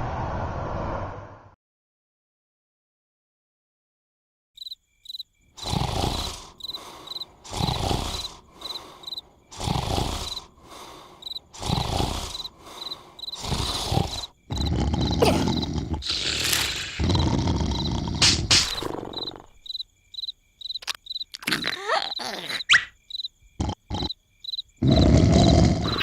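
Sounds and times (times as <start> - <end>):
crickets chirping: 4.6 - 26.0
cartoon snoring: 5.6 - 19.6, 21.4 - 22.9, 23.6 - 24.2, 24.8 - 26.0.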